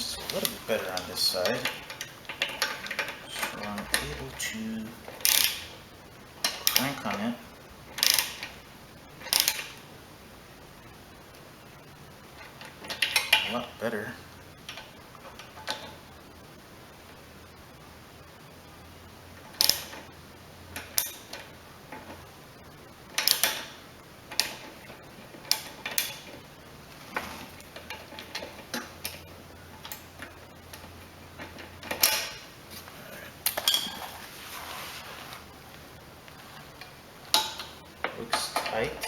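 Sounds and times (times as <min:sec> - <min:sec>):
metal wrench clicking and clanking: 0:05.2 - 0:05.8, 0:08.0 - 0:08.5, 0:09.2 - 0:09.7.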